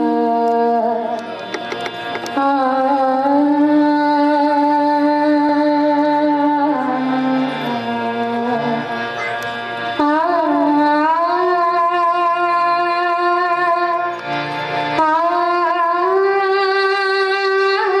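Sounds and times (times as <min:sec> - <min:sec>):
woman singing: 0:00.0 - 0:01.2, 0:02.4 - 0:08.9, 0:10.0 - 0:14.1, 0:15.0 - 0:18.0
sustained instrumental drone: 0:00.0 - 0:18.0.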